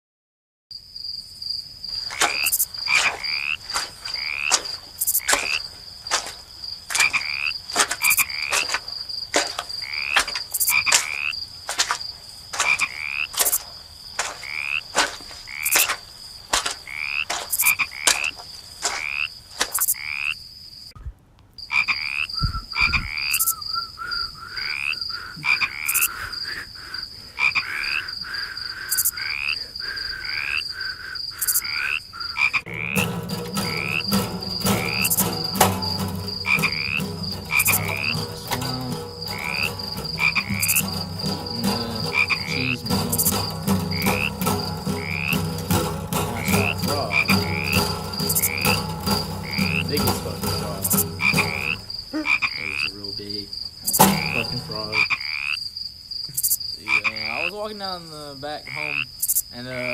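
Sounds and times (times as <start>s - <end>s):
frogs chirping and croaking: 1.0s - 21.0s, 21.6s - 59.9s
low thump: 32.7s - 52.0s, 53.9s - 54.9s.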